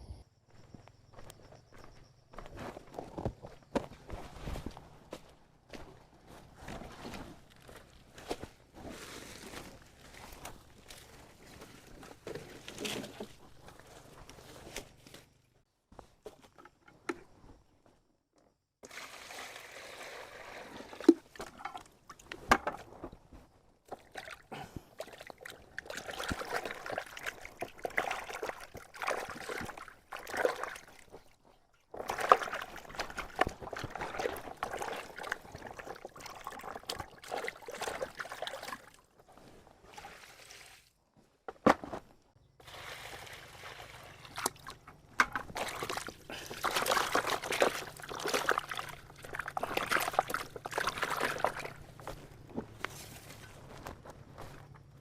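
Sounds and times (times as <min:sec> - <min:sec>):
water sloshing and splashing: 0:06.6 - 0:14.8, 0:18.8 - 0:41.0, 0:42.6 - 0:54.6.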